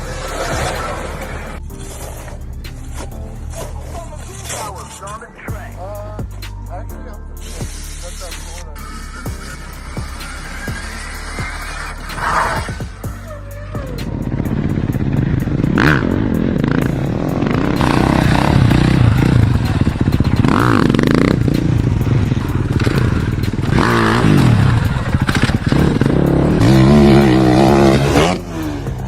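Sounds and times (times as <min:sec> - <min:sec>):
vehicle engine revving: 0:09.2 - 0:29.0.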